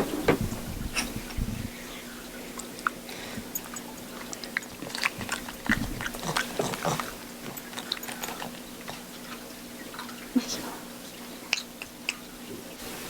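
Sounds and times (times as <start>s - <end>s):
faint steady hum: 0.0s - 13.0s
chewing crunchy food: 2.1s - 10.4s.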